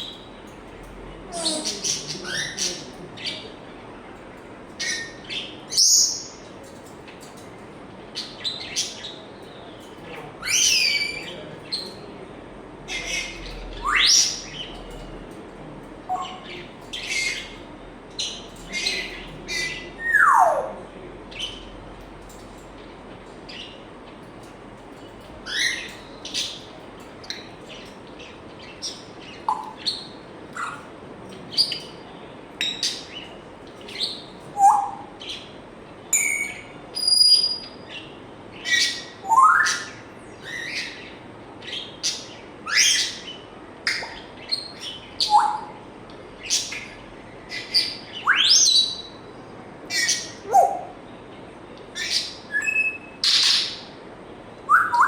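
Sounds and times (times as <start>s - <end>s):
parrot chirping and whistling: 52.5s - 53.7s.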